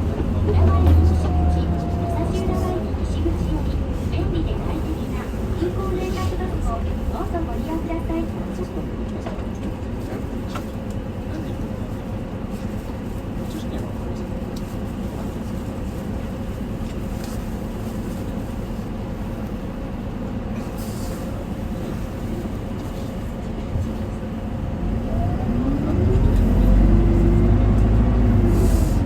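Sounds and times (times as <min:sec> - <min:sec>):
bus diesel engine revving: 0:00.0 - 0:07.4, 0:24.6 - 0:29.0.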